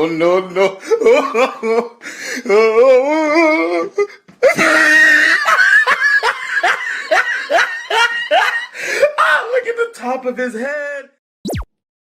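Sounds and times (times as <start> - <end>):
person laughing: 0.6 - 9.2
warbling voice: 11.4 - 11.7.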